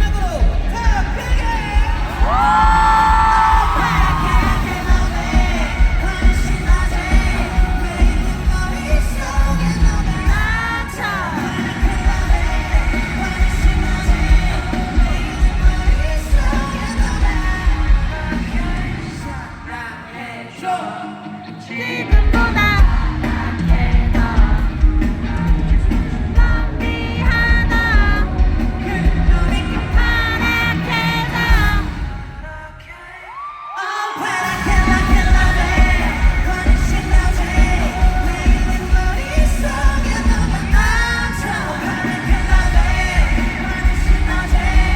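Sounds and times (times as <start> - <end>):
heavy bass beat: 0.0 - 10.7, 34.7 - 41.2
live pop band: 0.0 - 44.9
person singing: 0.0 - 44.9.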